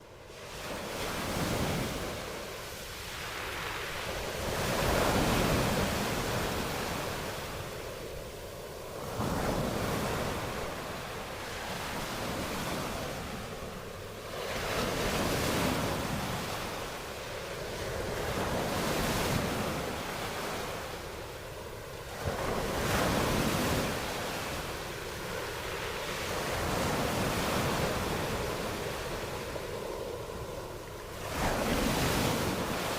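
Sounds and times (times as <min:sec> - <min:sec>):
waves breaking: 0:00.0 - 0:07.8
wind: 0:00.0 - 0:32.9.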